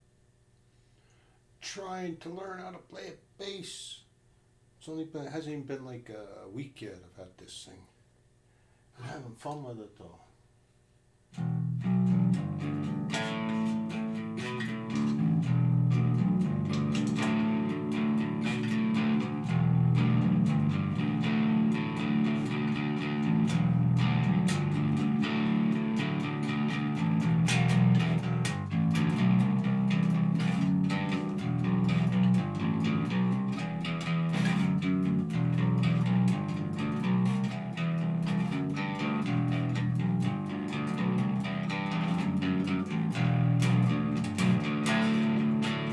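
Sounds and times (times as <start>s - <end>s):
electric bass guitar plucked notes: 11.4s - 45.9s.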